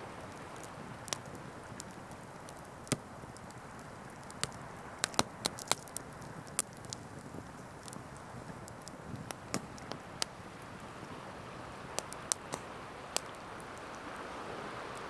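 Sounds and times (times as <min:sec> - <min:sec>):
dry wood cracking and snapping: 0:00.2 - 0:14.0
ocean surf: 0:09.1 - 0:15.0.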